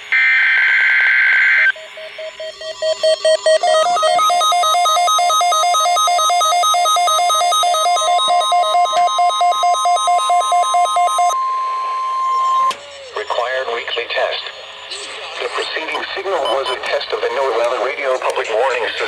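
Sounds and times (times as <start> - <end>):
steady alarm tone: 0.2 - 17.6
rapid alert beeping: 2.2 - 12.7, 15.4 - 17.3.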